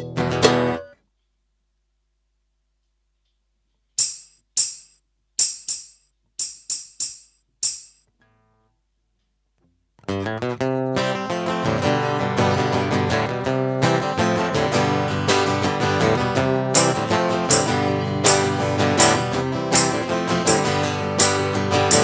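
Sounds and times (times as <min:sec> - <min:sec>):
acoustic guitar strumming: 0:00.0 - 0:00.9, 0:10.1 - 0:22.0
jingly stomp box hits: 0:04.0 - 0:08.0, 0:16.8 - 0:22.0.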